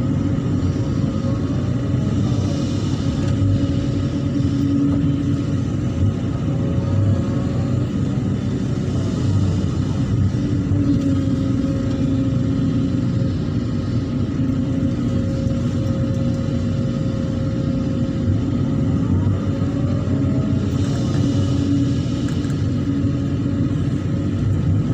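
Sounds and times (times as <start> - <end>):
engine whine: 0.0 - 24.9
excavator diesel engine droning: 0.0 - 24.9.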